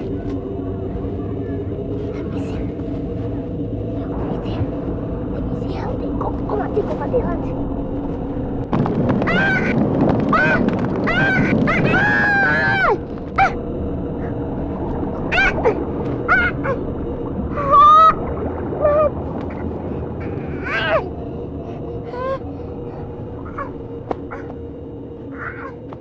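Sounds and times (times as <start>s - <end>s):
low background hum: 0.0s - 26.0s.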